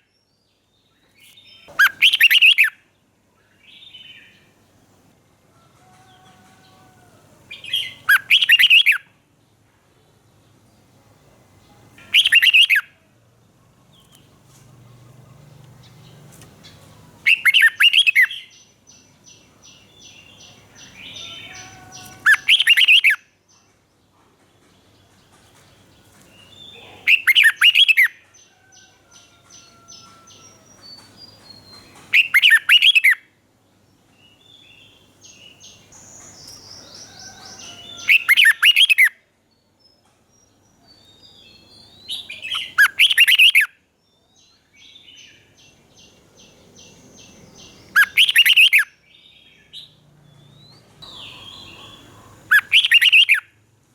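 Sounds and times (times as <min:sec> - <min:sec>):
bird singing warbled phrases: 0:00.0 - 0:04.7, 0:07.5 - 0:09.2, 0:11.7 - 0:13.0, 0:13.9 - 0:23.8, 0:25.4 - 0:28.2, 0:29.6 - 0:33.3, 0:34.2 - 0:39.8, 0:40.4 - 0:53.6
rapid chattering bird calls: 0:15.0 - 0:18.4, 0:19.7 - 0:23.2, 0:46.8 - 0:48.9, 0:51.0 - 0:53.5.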